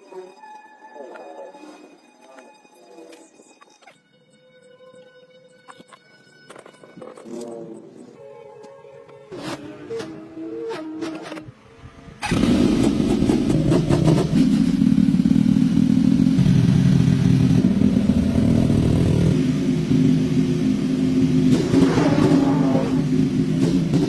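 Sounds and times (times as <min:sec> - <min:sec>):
motorcycle engine running: 0:12.2 - 0:24.0.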